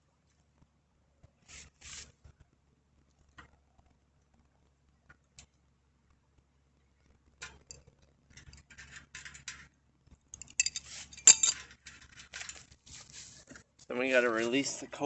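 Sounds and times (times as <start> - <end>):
metal tools clinking: 10.4 - 12.6.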